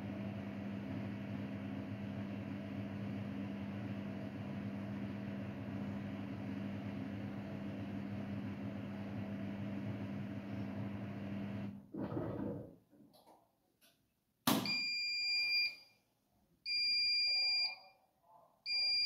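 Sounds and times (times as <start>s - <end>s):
washing machine motor hum: 0.0s - 12.7s.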